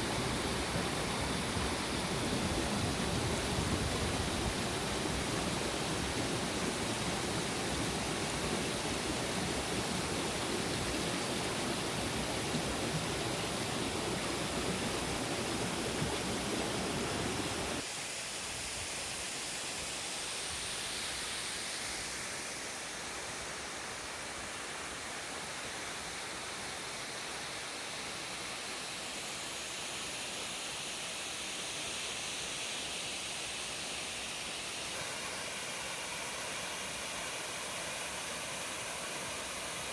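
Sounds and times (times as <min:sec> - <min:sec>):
waterfall rushing: 0:00.0 - 0:17.8, 0:34.8 - 0:39.9.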